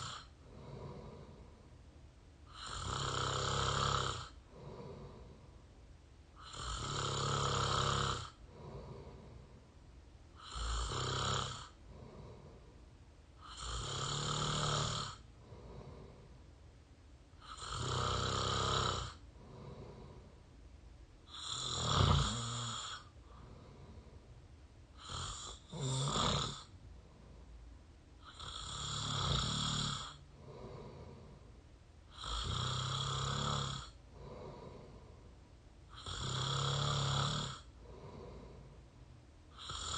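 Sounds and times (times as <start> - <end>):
person snoring: 0.0 - 1.6, 2.5 - 5.5, 6.4 - 9.6, 10.4 - 12.7, 13.4 - 16.3, 17.4 - 20.4, 21.3 - 24.2, 25.0 - 26.7, 28.2 - 31.4, 32.1 - 35.2, 35.9 - 38.8, 39.5 - 39.9.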